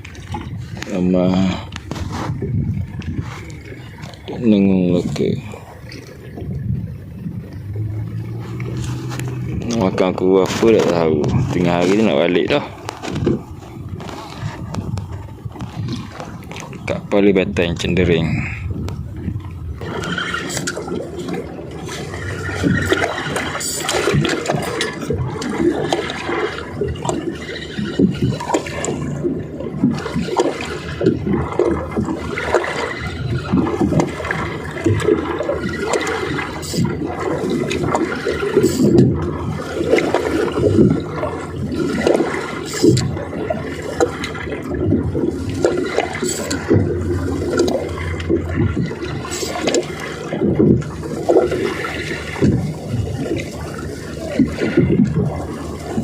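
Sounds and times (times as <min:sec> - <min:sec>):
water sloshing and splashing: 0:00.0 - 0:56.0.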